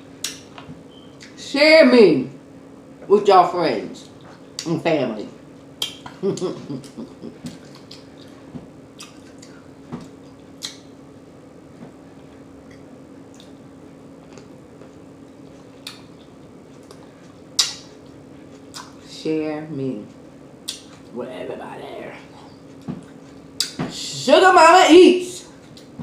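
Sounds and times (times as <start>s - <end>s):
steady low hum: 0.0s - 26.0s
wet mouth smacks chewing: 7.5s - 8.4s, 9.0s - 10.9s, 12.6s - 13.6s, 14.2s - 17.8s, 18.6s - 19.0s, 20.6s - 21.0s, 22.7s - 23.8s.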